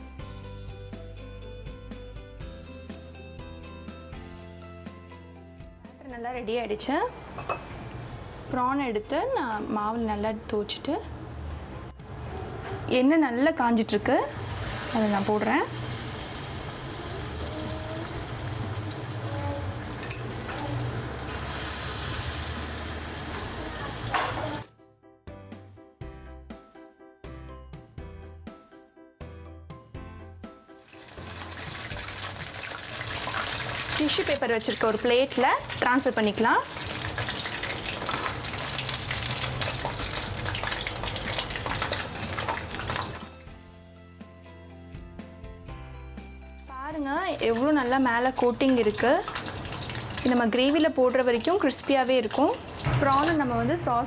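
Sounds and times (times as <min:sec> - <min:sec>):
soft background music: 0:00.0 - 0:54.0
deep-frying sizzle in oil: 0:14.0 - 0:24.7, 0:30.8 - 0:43.4, 0:47.3 - 0:53.4.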